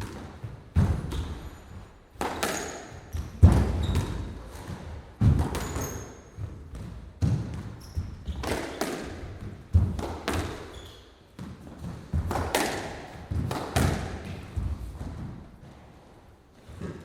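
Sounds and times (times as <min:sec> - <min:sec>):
squash ball smacks: 0:00.0 - 0:10.8, 0:11.4 - 0:15.4
faint high squeaks: 0:10.7 - 0:11.1.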